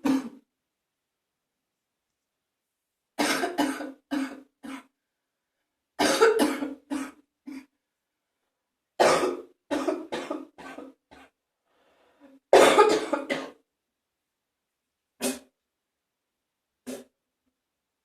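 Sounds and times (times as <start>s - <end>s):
person coughing wetly: 0.0s - 0.4s, 3.2s - 4.9s, 6.0s - 7.7s, 9.0s - 11.3s, 12.5s - 13.6s, 15.2s - 15.5s
person breathing: 11.6s - 12.5s.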